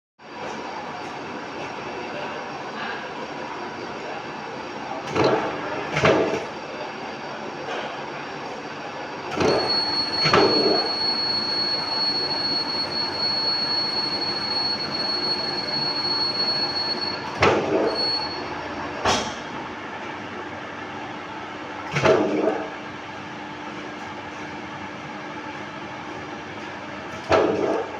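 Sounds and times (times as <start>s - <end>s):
mechanical hum: 0.2s - 27.9s
machine tool whine: 9.3s - 19.0s.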